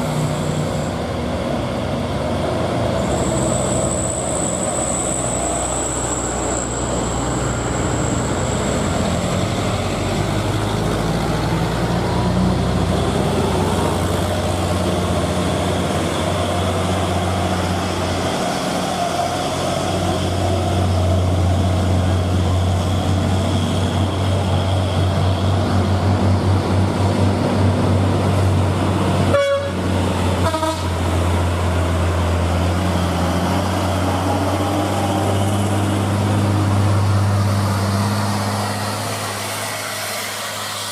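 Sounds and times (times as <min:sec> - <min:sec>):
heavy truck engine running: 0:00.0 - 0:40.9
vehicle horn toots: 0:29.3 - 0:29.8, 0:30.4 - 0:31.0.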